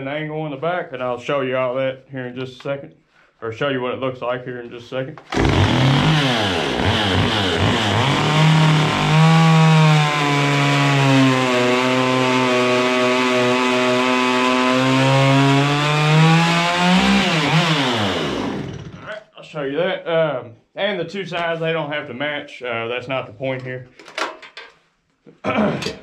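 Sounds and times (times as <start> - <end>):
chainsaw cutting log: 5.3 - 19.1.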